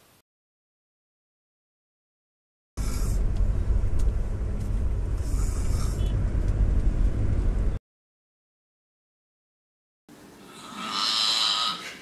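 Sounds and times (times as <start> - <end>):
loud low rumble: 2.8 - 7.8.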